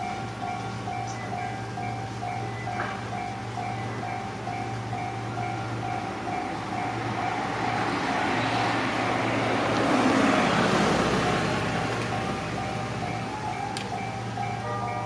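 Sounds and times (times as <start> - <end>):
level crossing bell ringing: 0.0 - 8.3, 12.1 - 15.0
train rolling past: 0.0 - 15.0.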